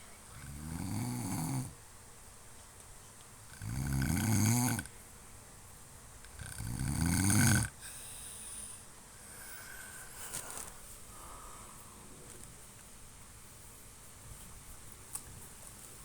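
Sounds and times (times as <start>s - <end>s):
man snoring: 0.4s - 1.7s, 3.5s - 4.9s, 6.4s - 7.8s.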